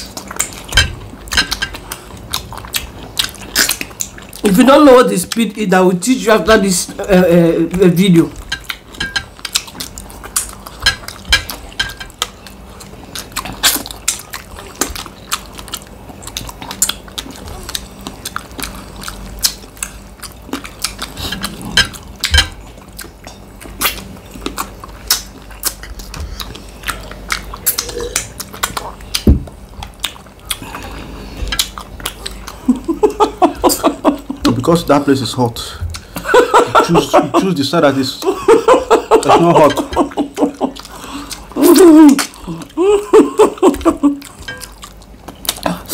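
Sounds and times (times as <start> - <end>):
chewing: 0.0 - 37.0, 37.8 - 45.9
utensils clinking on dishes: 8.4 - 9.4.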